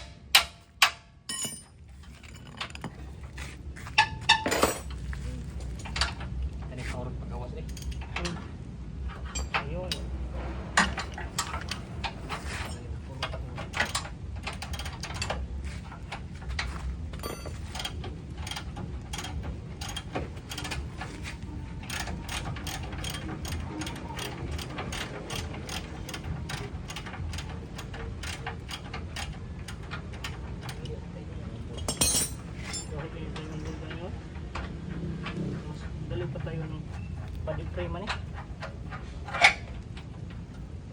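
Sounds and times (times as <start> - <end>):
ratchet wrench clicking: 17.7 - 20.8, 24.2 - 29.8.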